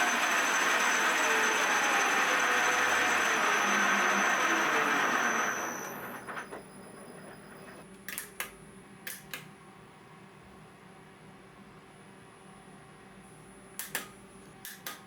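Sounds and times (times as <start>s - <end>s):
milling machine motor winding down: 0.0s - 7.8s
sharp clicks: 8.1s - 9.5s, 13.8s - 15.0s.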